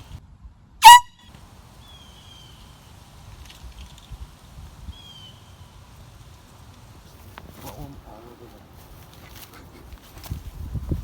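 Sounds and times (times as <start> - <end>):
air horn blast: 0.8 - 1.2.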